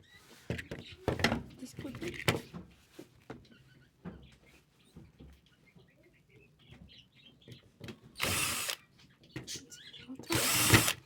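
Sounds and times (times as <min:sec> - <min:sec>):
power drill spinning: 0:08.2 - 0:08.8, 0:10.3 - 0:11.0.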